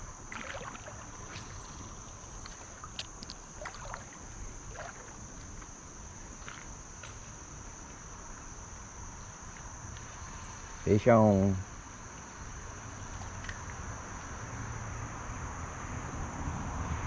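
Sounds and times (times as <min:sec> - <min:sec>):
legs wading through water: 0:00.0 - 0:08.2, 0:11.7 - 0:14.1
high-pitched insect drone: 0:00.0 - 0:16.3.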